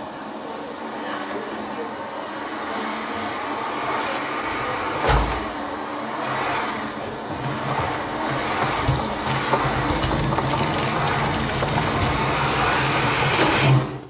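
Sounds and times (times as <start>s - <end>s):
vacuum cleaner running: 0.0s - 14.0s.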